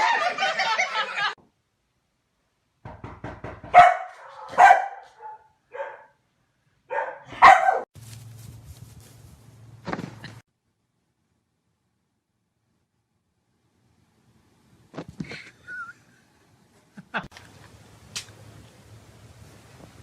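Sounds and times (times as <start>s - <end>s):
dog barking: 3.7s - 6.2s, 6.9s - 7.9s.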